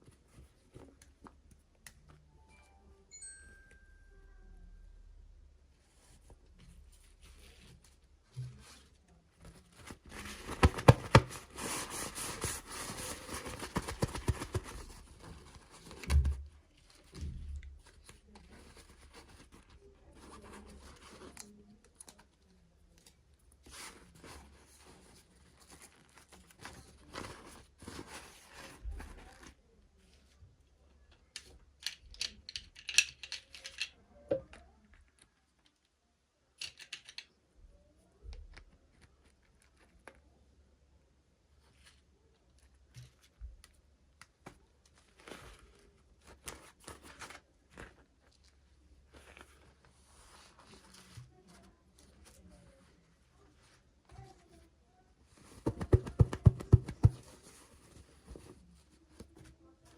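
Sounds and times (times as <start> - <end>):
plastic and paper rustling: 6.0 - 30.2, 44.3 - 59.9.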